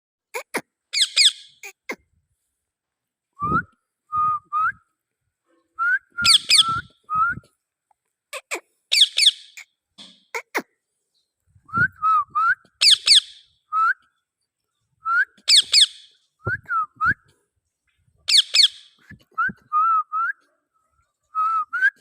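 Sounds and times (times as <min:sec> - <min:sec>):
parrot chirps and whistles: 0:00.9 - 0:01.6, 0:06.2 - 0:07.0, 0:08.9 - 0:09.6, 0:12.8 - 0:13.5, 0:15.4 - 0:16.2, 0:18.3 - 0:19.0.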